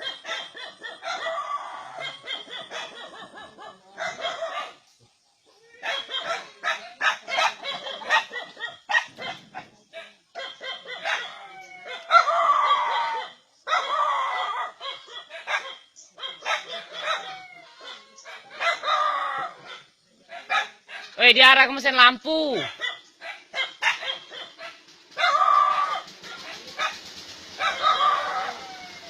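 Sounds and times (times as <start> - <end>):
dogs barking excitedly: 0.0 - 29.0
rooster crowing: 0.7 - 2.6, 10.6 - 15.0, 16.2 - 19.7, 25.2 - 26.1, 27.6 - 29.0.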